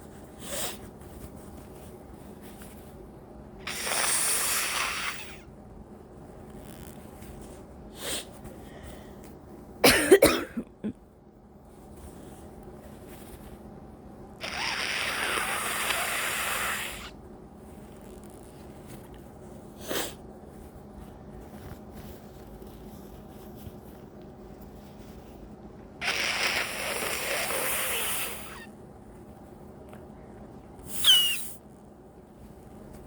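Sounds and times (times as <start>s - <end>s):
congested nose blowing: 3.6s - 5.4s, 14.4s - 17.1s, 26.0s - 28.7s, 30.9s - 31.6s
sharp burst of breath: 3.7s - 5.4s, 14.4s - 17.1s, 26.0s - 28.7s, 30.9s - 31.6s.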